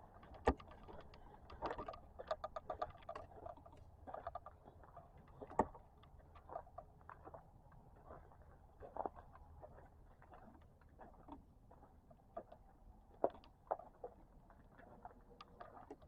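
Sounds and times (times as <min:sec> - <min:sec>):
groundhog clicking and ticking: 0:00.3 - 0:04.6.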